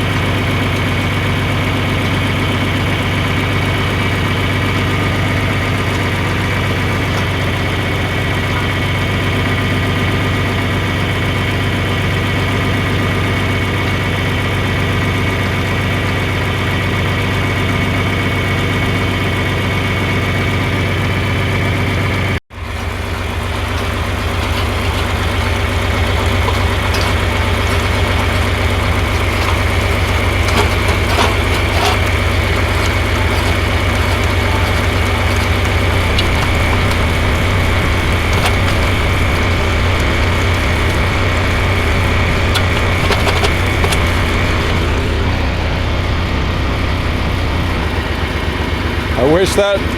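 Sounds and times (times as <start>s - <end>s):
tractor engine running: 0.0s - 49.9s
faint clicks and scrapes: 26.2s - 47.9s.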